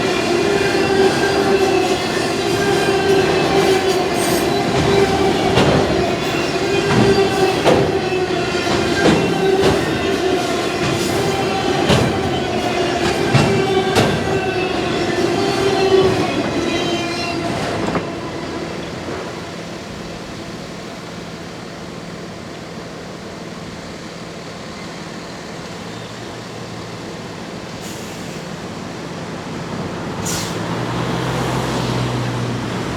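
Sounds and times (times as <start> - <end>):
train wheels clicking over joints: 0.0 - 16.7
train wheels squealing: 0.0 - 19.8, 24.4 - 28.7
train rumble: 0.0 - 32.9.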